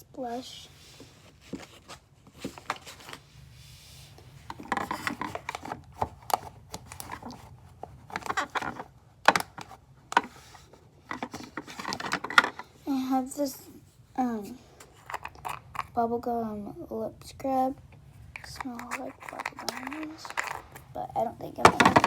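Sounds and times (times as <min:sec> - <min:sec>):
plastic clicks and knocks: 0:08.1 - 0:10.4, 0:11.1 - 0:12.6, 0:21.6 - 0:22.0
scratchy rustling: 0:18.0 - 0:22.0.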